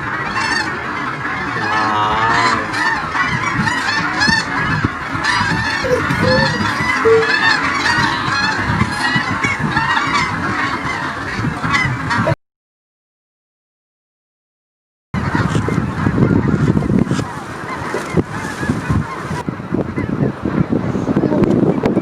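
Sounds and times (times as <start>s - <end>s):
geese honking: 0.0s - 12.4s.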